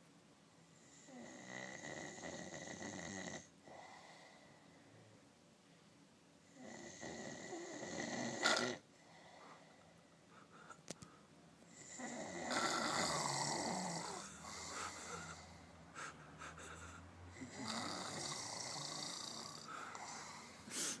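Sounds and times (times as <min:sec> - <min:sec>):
long snores: 0:00.8 - 0:04.6, 0:06.5 - 0:09.8, 0:11.7 - 0:15.7, 0:17.3 - 0:20.7.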